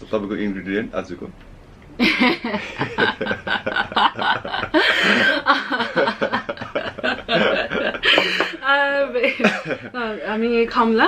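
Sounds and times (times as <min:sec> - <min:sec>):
people laughing: 0:02.0 - 0:10.1
people talking: 0:02.1 - 0:11.0.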